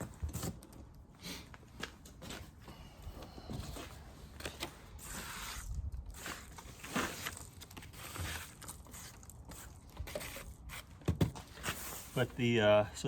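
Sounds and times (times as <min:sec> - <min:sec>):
beehive frames rustling and scraping: 0:01.6 - 0:12.6.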